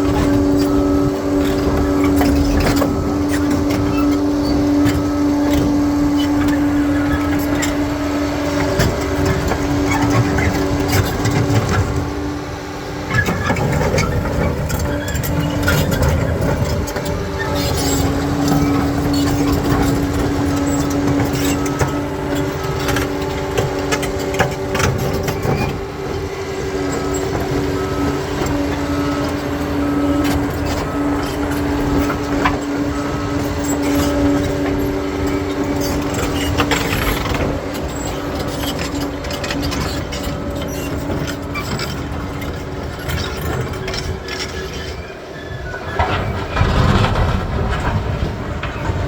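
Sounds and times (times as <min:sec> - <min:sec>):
bulldozer diesel engine: 0:00.0 - 0:49.0
knocks and clatter of rock: 0:45.8 - 0:49.0.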